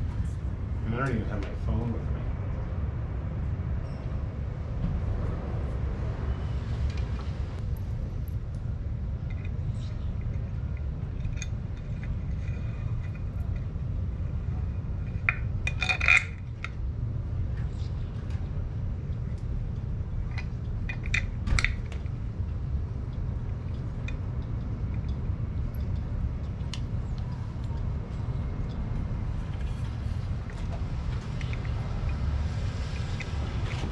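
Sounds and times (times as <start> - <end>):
steady low rumble: 0.0 - 33.9
metal parts clinking: 15.1 - 16.5.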